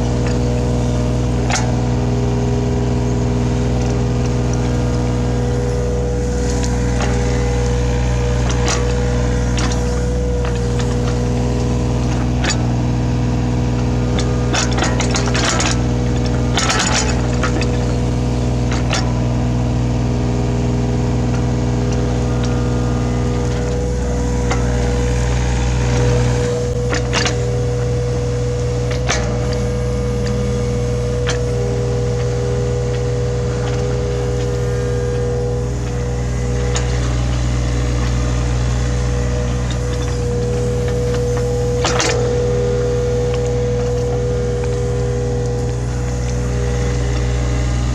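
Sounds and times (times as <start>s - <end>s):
excavator diesel engine running: 0.0s - 47.9s
high hydraulic whine: 0.0s - 47.9s
sharp knocks and clicks: 25.8s - 47.9s.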